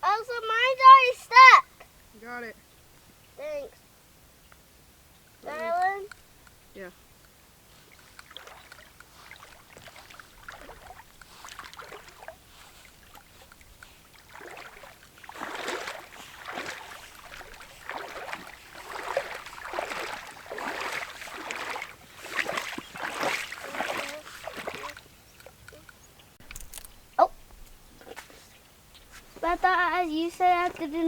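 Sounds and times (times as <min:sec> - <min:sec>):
water sloshing and splashing: 0:07.7 - 0:28.2, 0:29.1 - 0:31.0.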